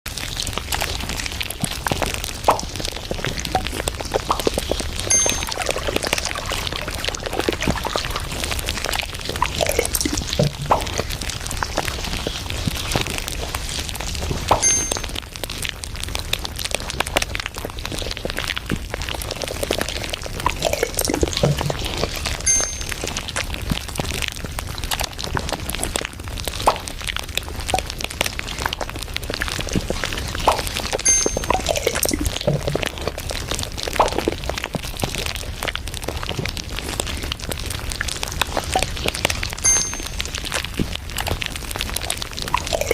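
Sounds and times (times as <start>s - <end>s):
liquid being poured: 0.2s - 12.6s, 14.4s - 15.2s, 19.3s - 23.6s, 29.8s - 34.7s, 38.4s - 40.5s, 42.1s - 42.9s
cups and tableware clinking: 5.1s - 6.6s, 9.5s - 10.9s, 14.6s - 15.2s, 20.6s - 21.9s, 22.5s - 23.2s, 31.1s - 32.8s, 39.6s - 40.2s.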